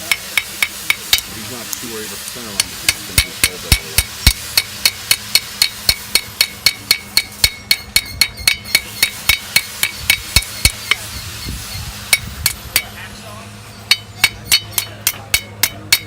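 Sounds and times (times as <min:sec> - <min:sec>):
hammer ringing on anvil: 0:02.6 - 0:13.0, 0:13.8 - 0:16.0.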